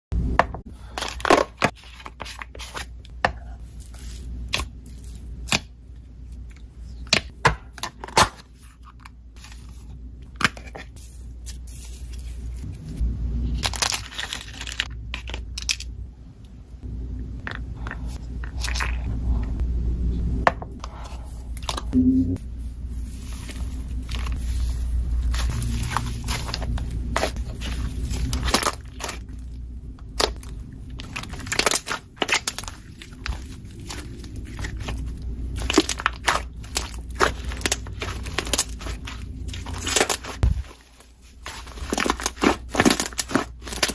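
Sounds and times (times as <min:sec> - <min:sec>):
steady low hum: 0:00.2 - 0:43.9
slime popping and crackling: 0:30.0 - 0:40.8, 0:41.4 - 0:43.9.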